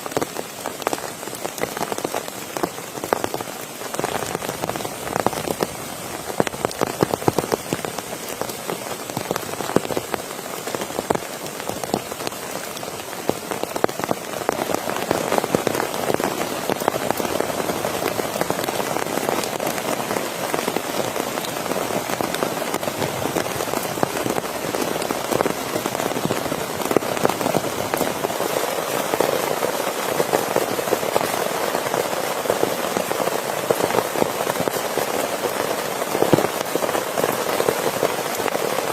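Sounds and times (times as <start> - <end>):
steady rain patter: 0.0 - 38.9.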